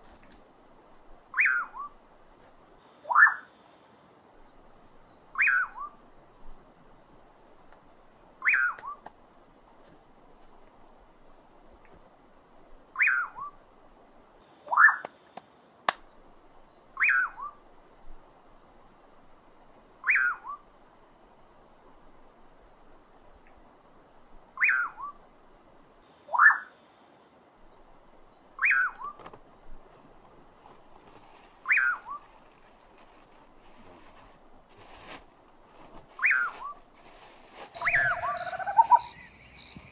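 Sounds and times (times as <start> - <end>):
insect chorus: 0.0 - 39.9
animal call falling in pitch: 37.8 - 39.9.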